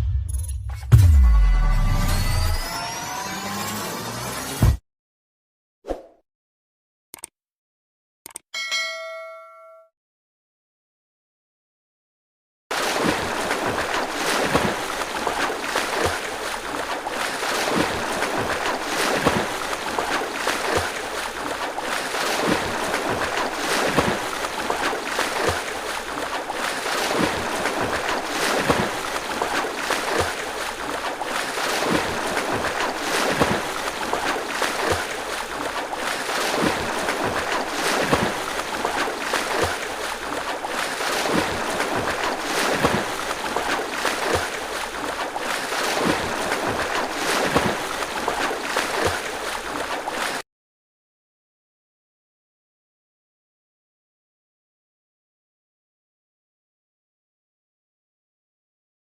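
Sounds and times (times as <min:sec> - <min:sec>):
churned water wash: 0:12.7 - 0:50.4
swimmer's strokes splashing: 0:12.7 - 0:50.4.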